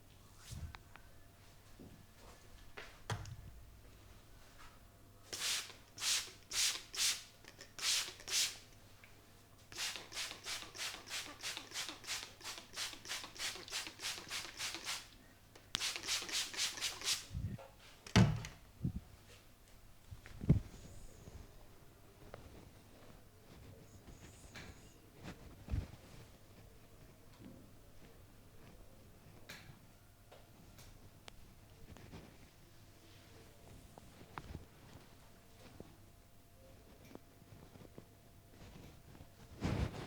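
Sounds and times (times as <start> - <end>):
hands rubbing skin and hair: 5.4 - 8.7, 9.7 - 17.4.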